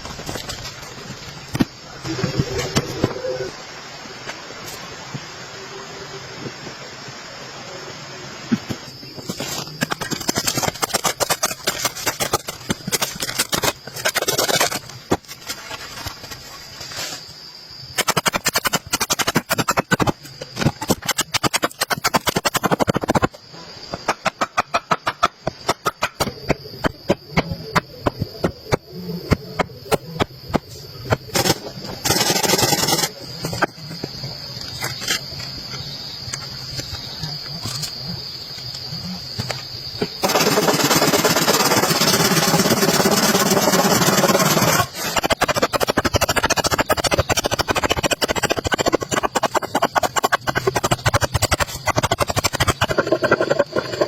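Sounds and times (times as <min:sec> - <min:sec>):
high insect chirr: 0:00.0 - 0:54.0
sharp knocking and scraping strokes: 0:09.2 - 0:17.2, 0:18.0 - 0:23.3, 0:40.2 - 0:54.0.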